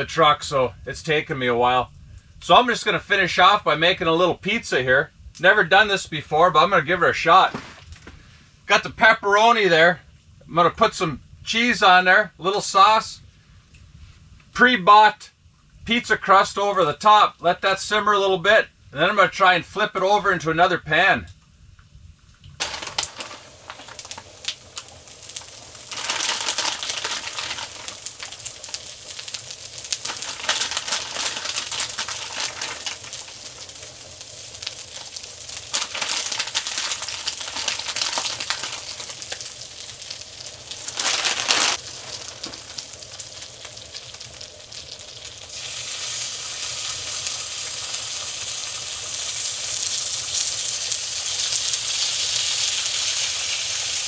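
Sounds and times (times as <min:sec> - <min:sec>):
pizza sizzling in a pan: 0:22.6 - 0:54.0.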